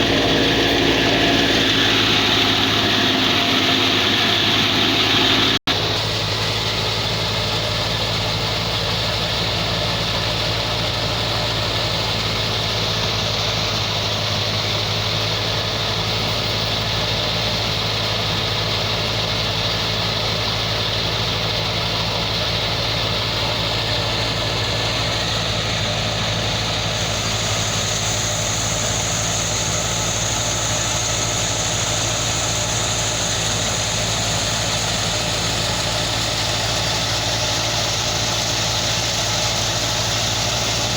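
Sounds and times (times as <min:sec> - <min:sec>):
thresher mechanical drone: 0:00.0 - 0:07.8
engine low hum: 0:00.0 - 0:40.9.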